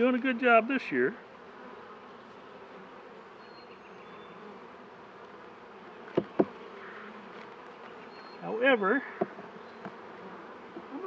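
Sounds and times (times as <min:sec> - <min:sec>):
honeybees buzzing: 0:00.0 - 0:11.0
sharp knocks: 0:06.1 - 0:06.6.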